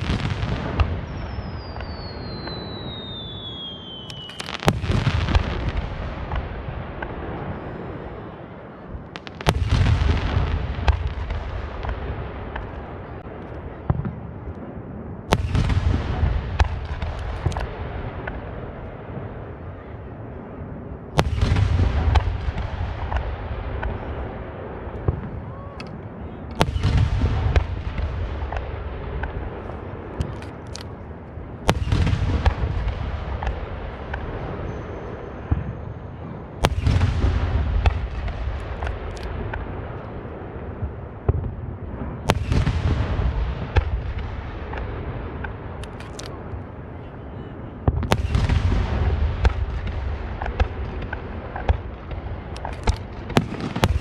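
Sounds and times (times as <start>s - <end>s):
sharp firework cracks: 0.0s - 7.4s, 36.6s - 40.1s, 47.9s - 54.0s
firework booms with rumble: 0.0s - 7.7s, 9.2s - 14.4s, 15.2s - 19.4s, 21.2s - 25.5s, 26.6s - 30.3s, 31.6s - 45.8s, 47.8s - 54.0s.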